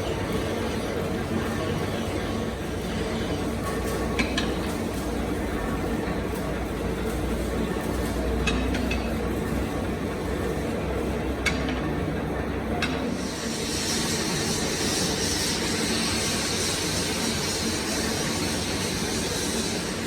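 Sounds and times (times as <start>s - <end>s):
machinery humming: 0.0s - 20.0s
high hiss: 13.2s - 20.0s.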